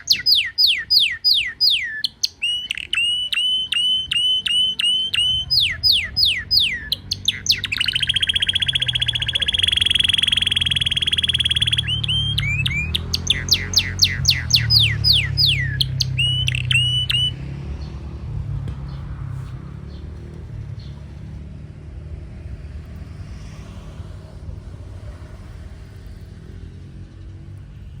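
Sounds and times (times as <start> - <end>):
canary singing: 0.0 - 17.9.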